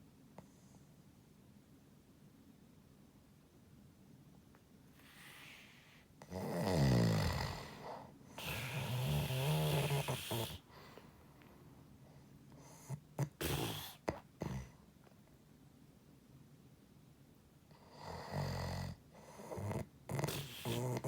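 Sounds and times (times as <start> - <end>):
short snorts: 5.0 - 11.0, 12.6 - 14.8, 19.3 - 21.0
pig-like snoring: 6.2 - 10.7, 12.8 - 14.8, 17.9 - 21.0.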